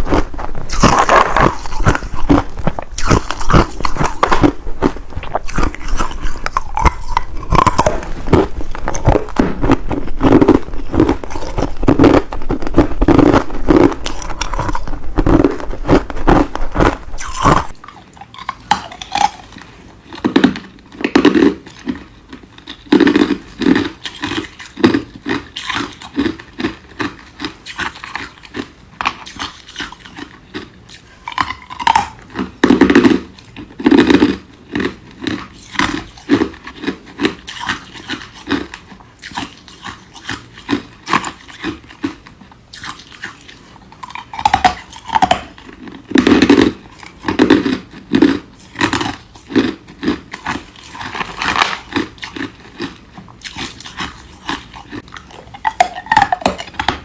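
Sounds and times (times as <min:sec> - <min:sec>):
ice cubes crunching: 0:00.0 - 0:17.8, 0:44.1 - 0:57.0.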